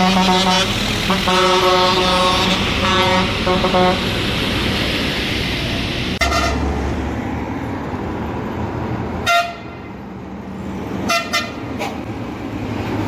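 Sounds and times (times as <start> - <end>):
bus horn toots: 0.0 - 4.1, 6.2 - 6.7, 9.2 - 9.9, 11.0 - 12.0
engine rumble: 0.0 - 13.0
street traffic: 0.0 - 13.0.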